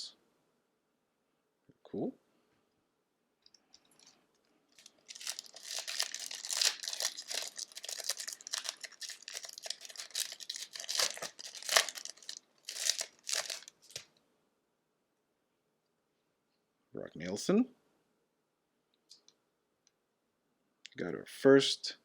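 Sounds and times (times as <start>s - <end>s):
wrapper tearing and crinkling: 4.0s - 14.1s.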